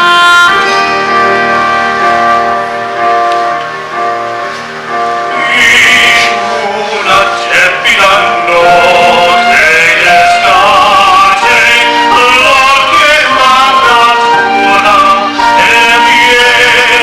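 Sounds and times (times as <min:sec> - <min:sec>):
musical accompaniment: 0:00.0 - 0:17.0
people singing: 0:05.3 - 0:17.0.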